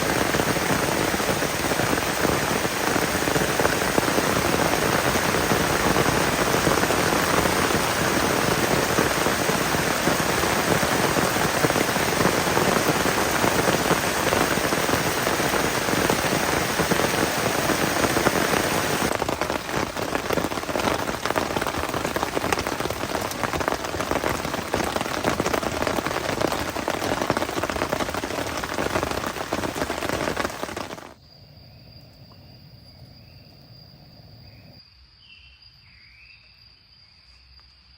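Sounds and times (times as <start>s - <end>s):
heavy rain on a tent: 0.0s - 31.2s.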